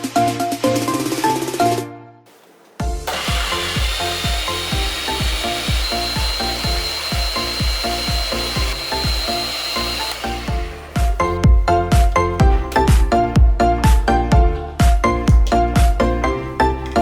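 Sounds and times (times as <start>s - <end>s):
background music with beat: 0.0s - 17.0s
blender motor whirring: 2.8s - 11.4s.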